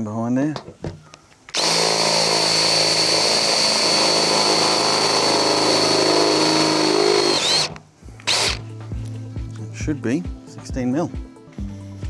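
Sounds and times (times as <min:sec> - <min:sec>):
electric drill cutting sheet metal: 0:01.5 - 0:08.6.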